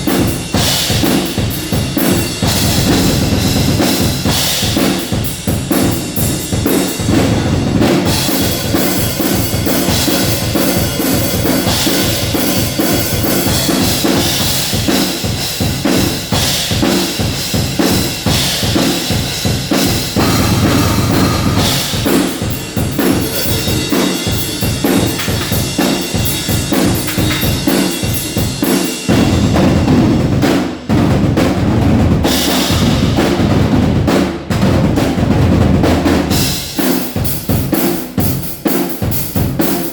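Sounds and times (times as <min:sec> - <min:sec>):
cymbals washing: 0:08.1 - 0:15.1, 0:18.1 - 0:29.2
kick drum and snare strikes: 0:19.8 - 0:23.1.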